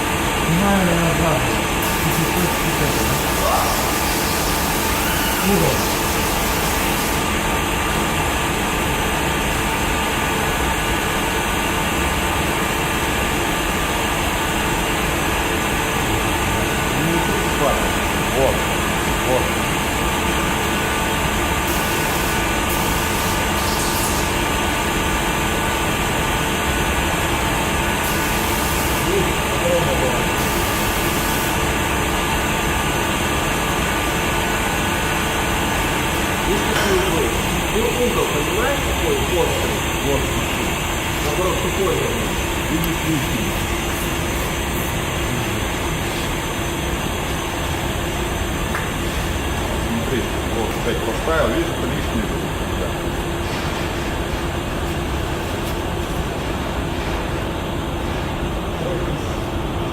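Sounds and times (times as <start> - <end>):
steady machine noise: 0.0 - 59.9
faint hum: 36.3 - 59.9.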